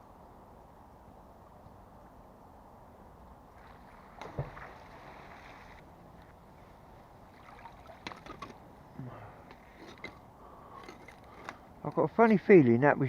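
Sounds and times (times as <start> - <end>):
water splash: 3.6 - 5.8, 7.3 - 8.5.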